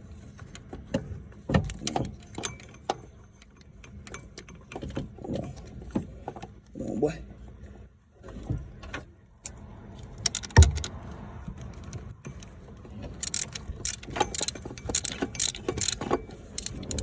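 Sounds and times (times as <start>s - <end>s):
metal tools clinking and rattling: 13.1s - 17.0s.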